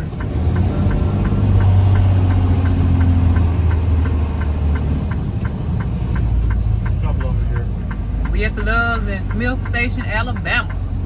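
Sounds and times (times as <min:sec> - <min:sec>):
faint even ticking: 0:00.0 - 0:11.0
truck diesel engine drone: 0:00.0 - 0:11.0.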